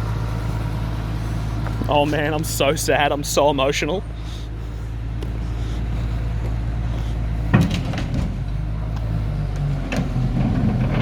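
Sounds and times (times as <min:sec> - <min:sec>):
truck engine running: 0:00.0 - 0:11.0
metallic clunk: 0:07.5 - 0:08.6, 0:09.8 - 0:11.0.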